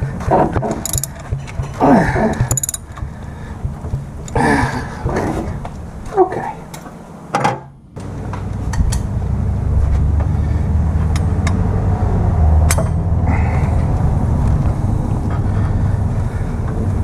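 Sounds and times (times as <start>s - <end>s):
motor vehicle rumbling: 0.0s - 17.0s
sharp clicks: 0.8s - 1.8s, 2.4s - 4.4s.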